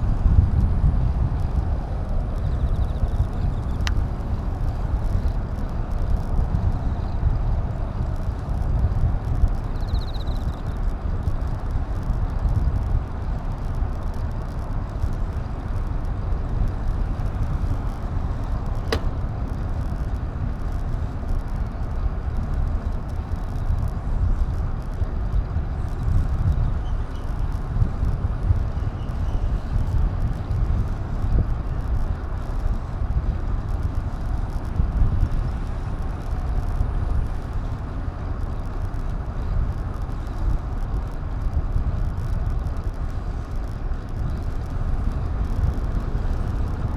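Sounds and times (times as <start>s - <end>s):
low wind: 0.0s - 46.9s
road rumble: 0.0s - 46.9s
sharp click: 18.8s - 19.3s.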